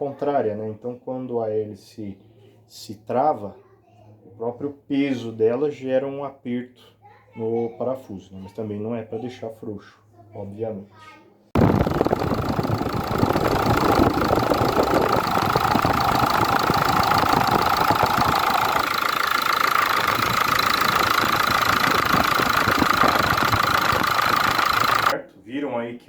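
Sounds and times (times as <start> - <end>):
diesel engine idling: 11.6 - 25.2.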